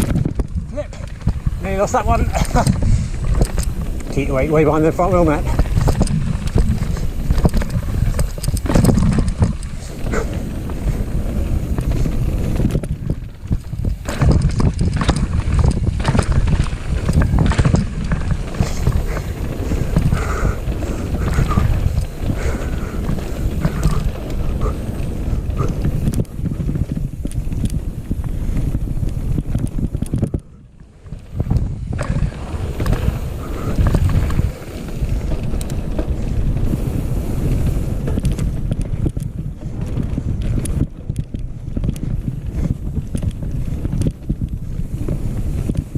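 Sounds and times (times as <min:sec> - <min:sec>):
bike chain and frame rattling: 0:00.0 - 0:45.9
tyres rumbling over dirt: 0:00.0 - 0:45.9
wind buffeting microphone: 0:00.0 - 0:45.9.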